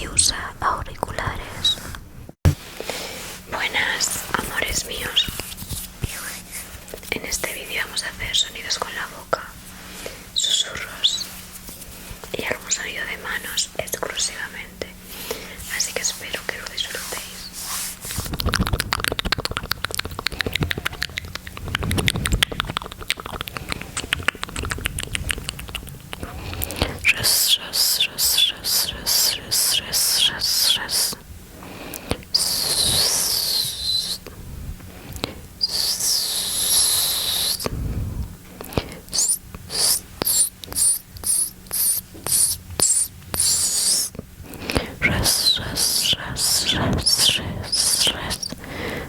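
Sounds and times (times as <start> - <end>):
wet hissing mouth sounds: 15.5 - 31.2, 31.9 - 34.3, 35.2 - 38.0, 38.6 - 49.0
wet mouth clicks and smacks: 18.2 - 26.9, 38.6 - 44.2
long hiss: 27.0 - 31.2, 32.0 - 34.3, 35.6 - 37.9, 39.1 - 44.2, 44.9 - 49.0.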